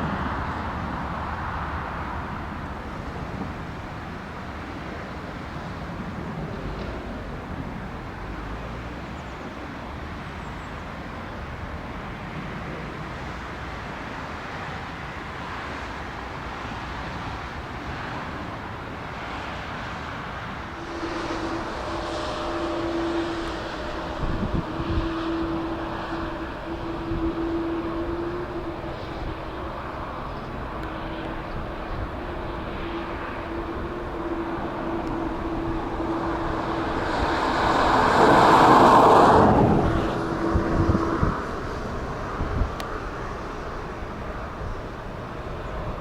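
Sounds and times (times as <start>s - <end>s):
jet engine rumble: 0.0s - 46.0s
two-note engine whine: 13.0s - 46.0s.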